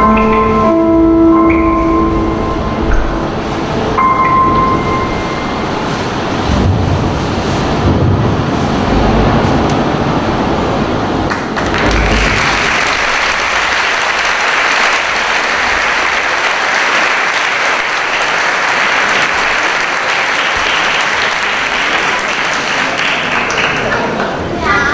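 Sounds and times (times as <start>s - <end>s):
music: 0.0s - 6.2s
audience applauding: 11.2s - 24.6s.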